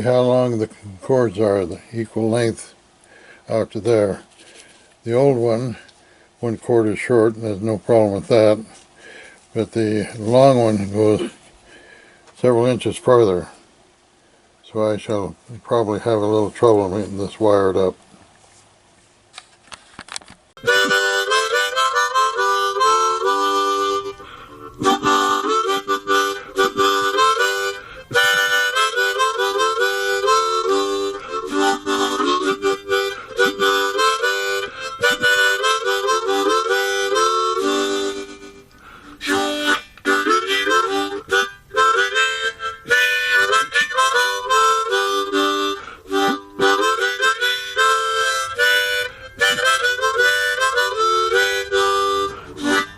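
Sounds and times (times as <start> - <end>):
harmonica melody: 20.6 - 52.9.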